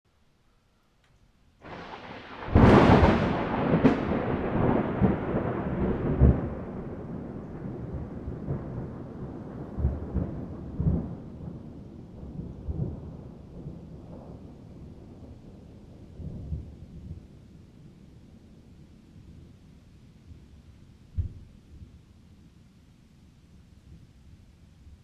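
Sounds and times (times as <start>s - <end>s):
thunder cracking and rumbling: 1.6s - 17.5s.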